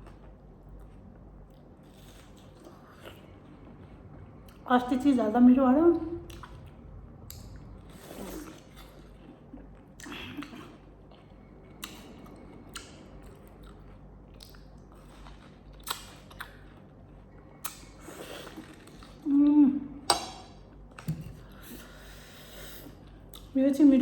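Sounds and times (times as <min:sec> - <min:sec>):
chewing and wet mouth smacks: 0:06.2 - 0:19.2, 0:23.0 - 0:23.5.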